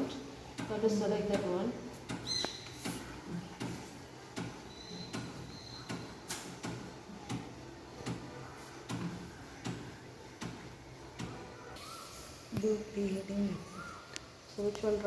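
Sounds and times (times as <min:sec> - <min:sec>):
printer humming: 0:00.0 - 0:11.8.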